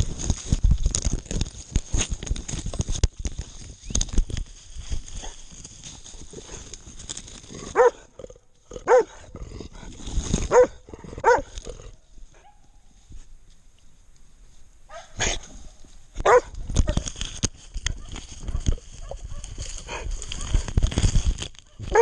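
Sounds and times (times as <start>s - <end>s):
scuffling crackling noise: 0.0s - 8.3s, 9.8s - 22.0s
dog barking: 7.8s - 8.0s, 8.9s - 9.2s, 10.5s - 11.5s, 14.9s - 15.5s, 16.2s - 16.5s, 17.9s - 19.5s, 21.7s - 22.0s.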